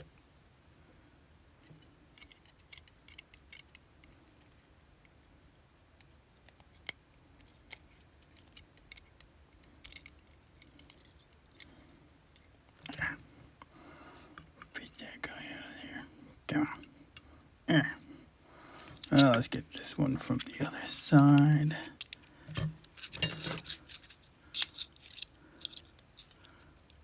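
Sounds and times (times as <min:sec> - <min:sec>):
metallic clicks of small tools on lock: 0:06.0 - 0:11.7, 0:18.8 - 0:19.4, 0:21.3 - 0:27.0.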